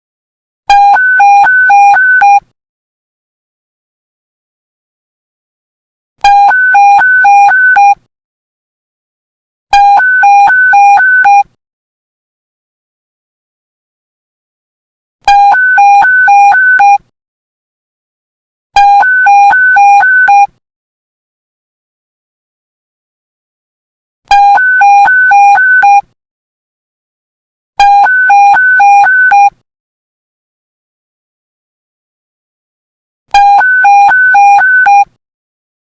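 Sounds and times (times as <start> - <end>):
two-tone alert beeping: 33.4 - 35.1.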